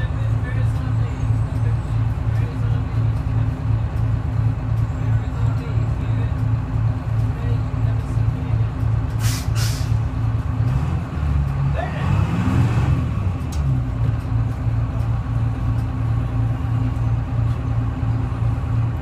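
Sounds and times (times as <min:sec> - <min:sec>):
bus diesel engine droning: 0:00.0 - 0:19.0
air hiss: 0:09.2 - 0:10.0.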